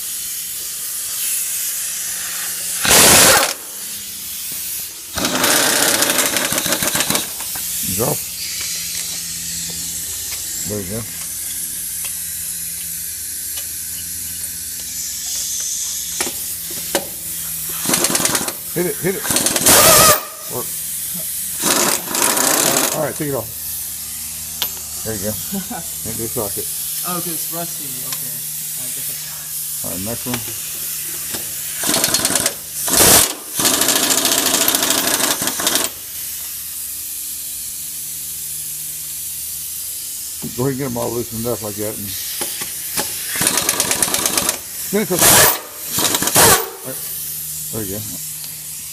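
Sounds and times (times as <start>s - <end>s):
impact wrench hammering: 4.5s - 7.7s, 16.1s - 18.6s, 19.2s - 20.5s, 21.6s - 23.0s, 24.6s - 24.9s, 30.2s - 36.0s, 42.4s - 44.6s, 45.2s - 46.9s.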